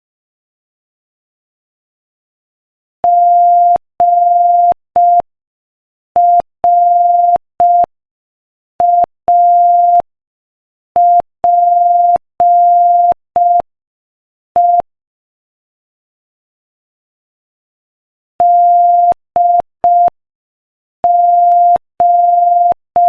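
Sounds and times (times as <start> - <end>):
morse code beeps: 18.4 - 20.1, 21.0 - 23.0.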